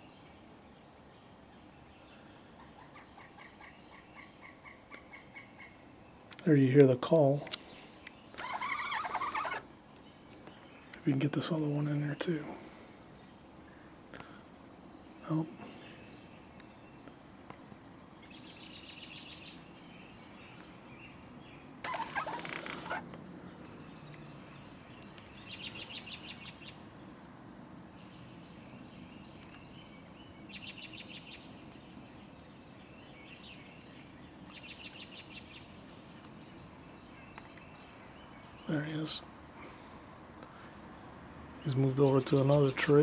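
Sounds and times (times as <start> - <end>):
woodpecker calling: 2.0 - 12.8, 18.2 - 26.9, 28.6 - 36.4.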